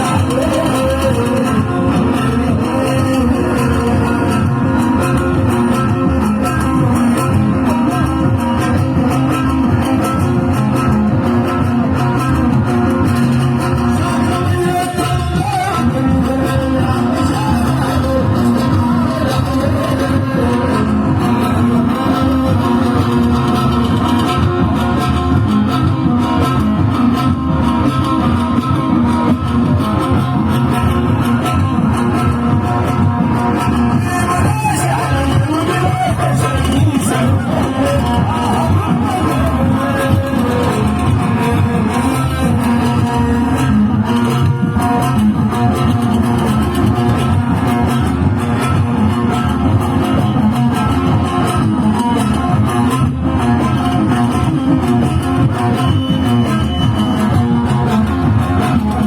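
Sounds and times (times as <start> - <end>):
bass: 0.0 - 59.0
guitar melody: 0.0 - 59.0
loud instrumental band music: 0.0 - 59.0
percussion: 0.0 - 59.0.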